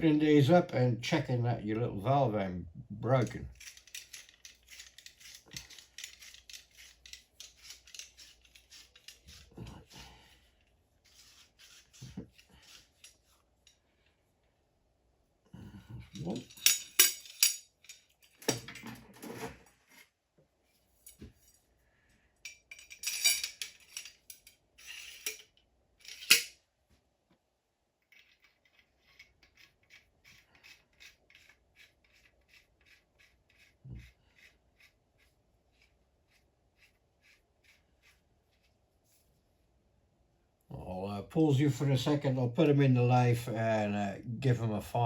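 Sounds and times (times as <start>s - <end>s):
metal parts scraping and clinking: 3.2s - 10.0s, 11.1s - 13.8s, 16.0s - 20.1s, 22.5s - 26.6s, 28.0s - 32.6s.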